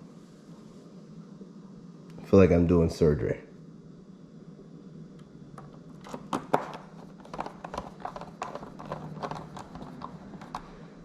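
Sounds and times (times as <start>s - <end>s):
plastic parts clicking: 5.6s - 10.7s.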